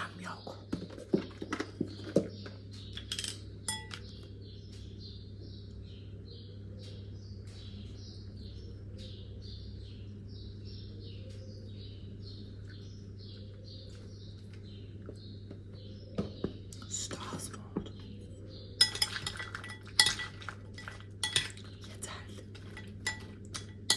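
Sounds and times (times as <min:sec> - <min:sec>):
utensil clinking glass dish: 0:03.7 - 0:04.0, 0:18.8 - 0:21.8, 0:22.6 - 0:23.9.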